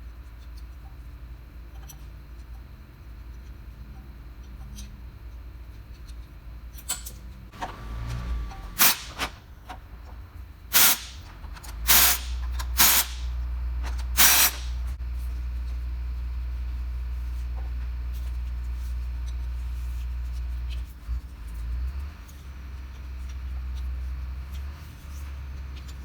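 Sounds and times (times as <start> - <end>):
low steady rumble: 3.0 - 26.0
hissing pressurized spray bursts: 8.8 - 9.4, 10.7 - 11.3, 11.9 - 13.3, 14.2 - 14.8.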